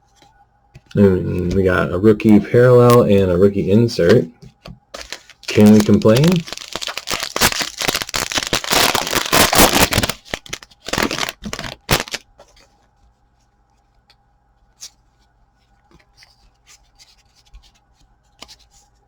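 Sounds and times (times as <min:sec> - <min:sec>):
foil wrapper tearing and crinkling: 0:05.0 - 0:12.3
cards being shuffled: 0:05.0 - 0:12.8
cards rustling: 0:05.0 - 0:12.8.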